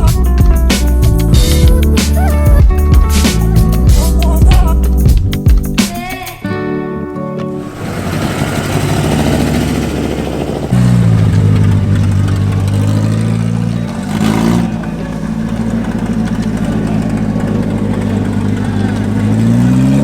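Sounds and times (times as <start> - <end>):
car engine idling: 7.6 - 20.0.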